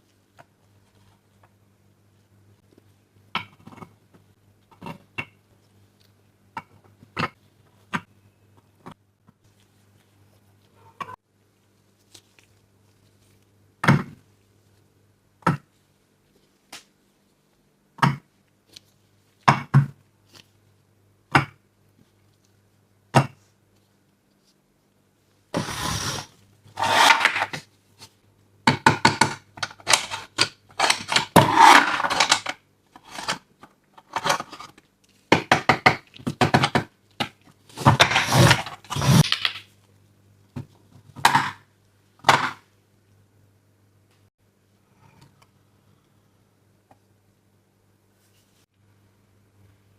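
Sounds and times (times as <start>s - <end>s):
toy pieces clattering: 30.8s - 33.4s.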